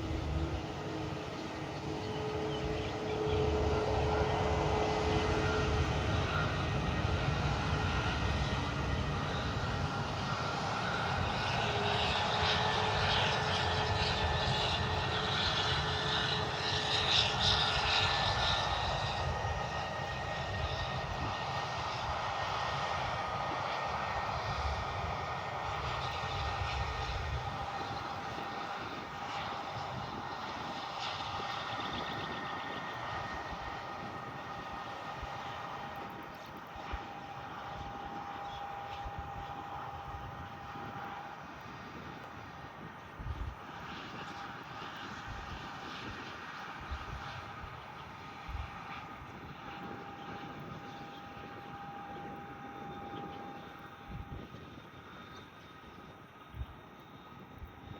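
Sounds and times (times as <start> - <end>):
aircraft engines running: 0.0 - 57.9.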